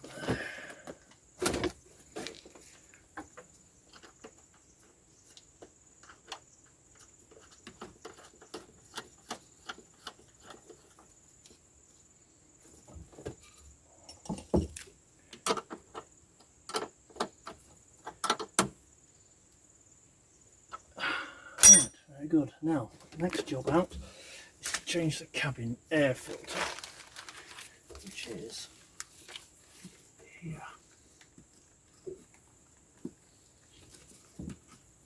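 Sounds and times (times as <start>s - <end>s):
hand tools clicking and tapping: 21.6s - 21.9s.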